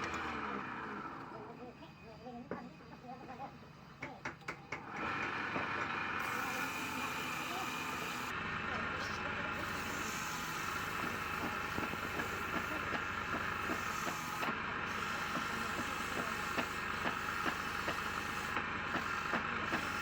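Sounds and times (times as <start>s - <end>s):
wood lathe running with a hiss: 4.8s - 20.0s.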